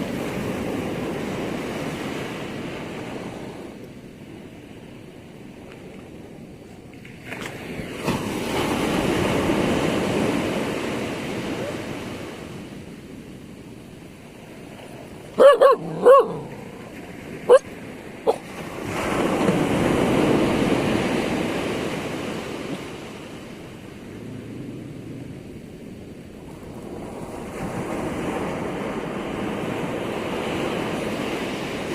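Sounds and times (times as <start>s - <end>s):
ocean waves breaking on shore: 0.0s - 31.9s
dog barking: 15.4s - 16.8s, 17.5s - 17.7s, 18.3s - 18.5s.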